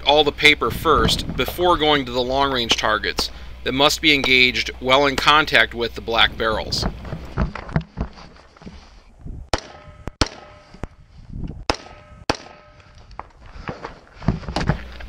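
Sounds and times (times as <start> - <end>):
rifle shots: 11.7 - 12.8.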